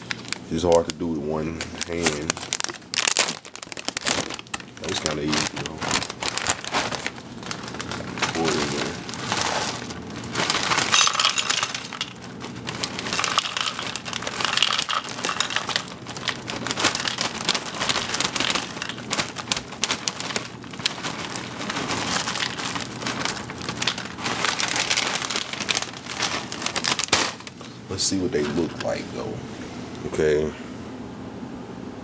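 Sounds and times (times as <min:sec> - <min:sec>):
plastic bag crinkling: 0:00.0 - 0:29.1
cereal pouring into a bowl: 0:03.0 - 0:27.6.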